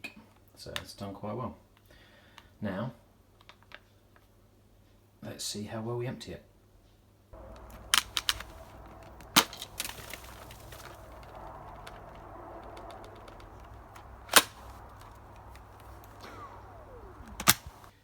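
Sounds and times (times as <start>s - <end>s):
low steady hum: 7.4s - 18.0s.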